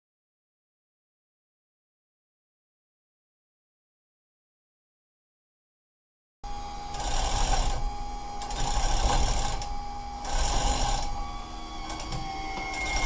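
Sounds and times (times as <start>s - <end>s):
steady whine: 6.4s - 13.0s
chain hoist chain rattling: 8.5s - 11.1s.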